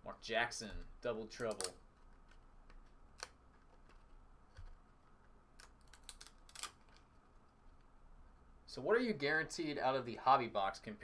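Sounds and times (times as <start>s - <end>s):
cards clicking while flipped: 1.4s - 4.8s, 5.5s - 7.2s.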